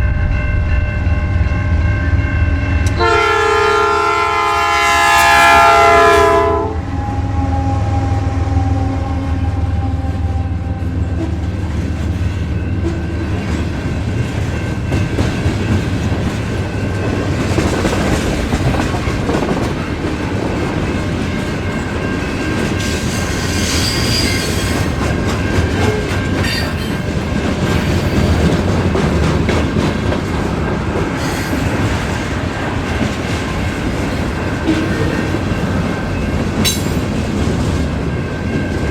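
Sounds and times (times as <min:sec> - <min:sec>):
train horn chord: 0:00.0 - 0:11.5
train cars clattering over rails: 0:11.3 - 0:38.9.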